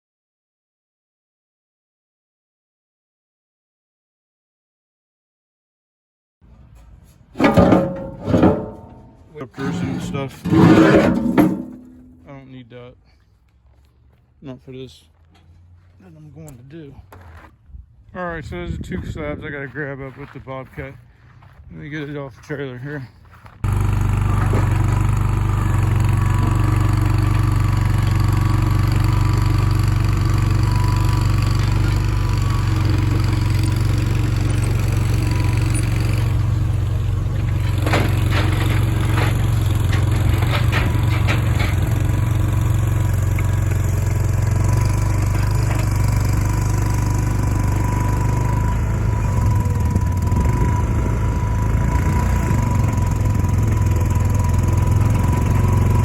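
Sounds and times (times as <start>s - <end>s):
skid steer engine running: 6.6s - 12.3s, 23.3s - 56.0s
metal clanks and knocks: 7.3s - 12.3s, 23.7s - 42.8s.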